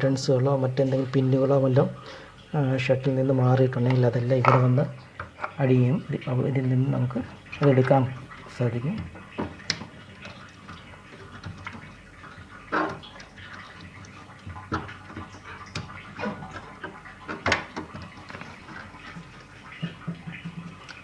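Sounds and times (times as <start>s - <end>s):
plastic clicks and knocks: 3.8s - 5.6s, 7.6s - 21.0s.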